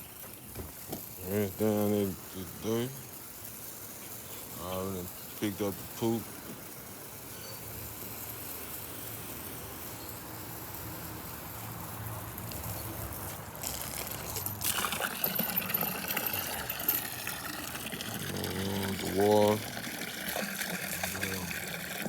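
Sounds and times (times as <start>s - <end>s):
outdoor background hiss: 0.0s - 22.0s
water running and splashing: 11.4s - 22.0s.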